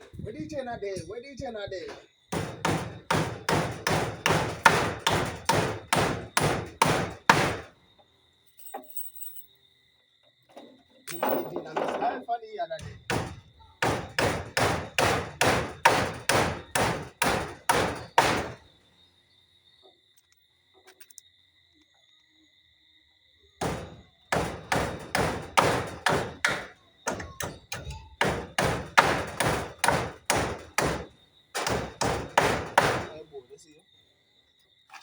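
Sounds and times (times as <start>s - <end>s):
hammer driving nails: 2.3s - 7.7s, 13.1s - 18.6s, 23.6s - 33.2s.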